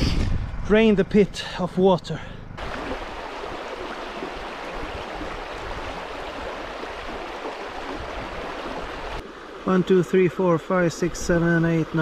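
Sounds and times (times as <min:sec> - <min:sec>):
water rushing: 0:02.6 - 0:12.0.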